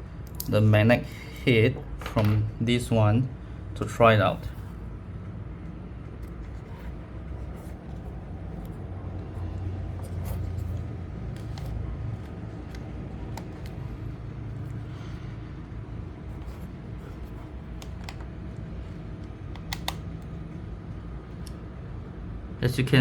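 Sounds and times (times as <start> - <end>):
clicks of charger cable handling: 7.5 - 14.8, 16.4 - 20.4.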